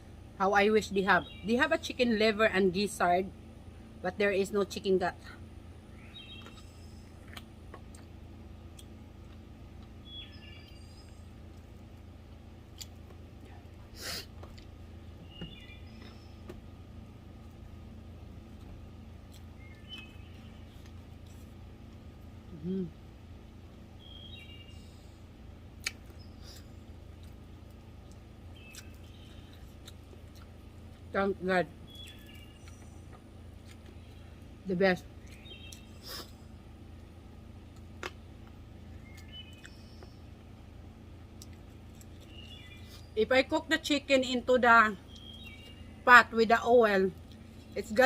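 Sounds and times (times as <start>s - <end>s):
low steady background noise: 0.0s - 48.0s
low steady hum: 0.0s - 48.0s
faint bird chirps: 10.0s - 11.4s, 15.2s - 16.5s, 19.4s - 21.5s, 23.9s - 25.2s, 28.5s - 29.9s, 31.8s - 33.1s, 38.8s - 40.4s, 42.0s - 43.2s, 45.0s - 46.1s.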